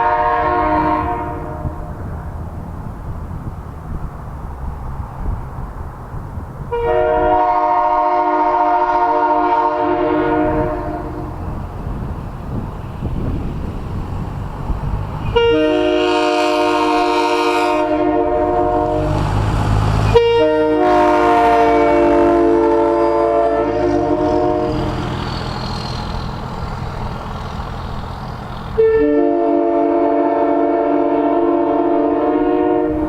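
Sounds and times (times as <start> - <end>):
multi-note train air horn: 0.0 - 2.1, 6.7 - 11.4, 15.2 - 19.2, 20.0 - 25.6, 28.8 - 33.0
low train rumble: 0.0 - 33.0.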